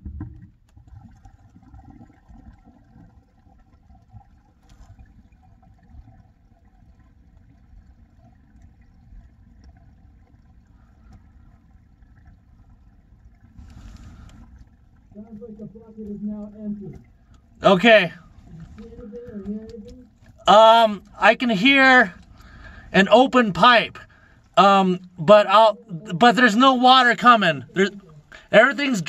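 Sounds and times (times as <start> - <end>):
water draining through pipe: 0.0 - 29.0.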